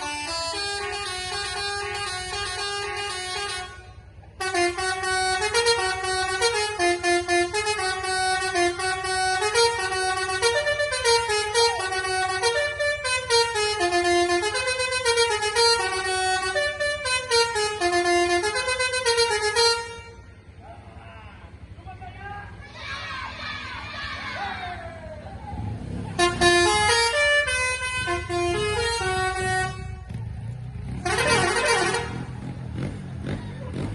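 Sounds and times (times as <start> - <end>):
multi-tone bus horn tune: 0.0 - 20.6, 26.1 - 33.9.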